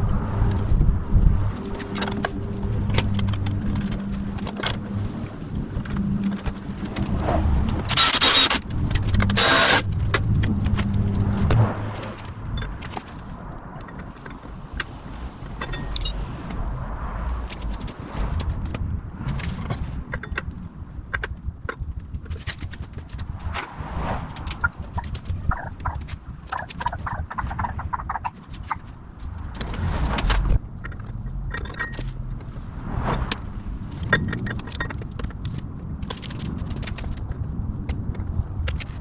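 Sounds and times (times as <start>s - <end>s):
low hum: 0.0s - 20.8s, 29.0s - 35.0s
loud bursts of noise: 7.9s - 9.9s.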